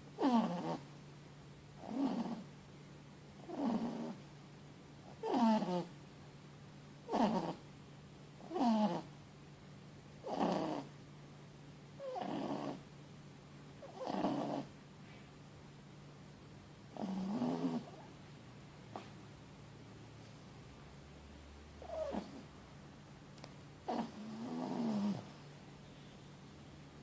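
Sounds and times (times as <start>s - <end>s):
puppy snoring loudly: 0.2s - 0.9s, 1.8s - 2.5s, 3.4s - 4.3s, 5.0s - 6.0s, 7.0s - 7.7s, 8.4s - 9.1s, 10.2s - 11.0s, 12.0s - 12.9s, 13.8s - 14.8s, 16.9s - 18.1s, 21.8s - 22.6s, 23.8s - 25.4s.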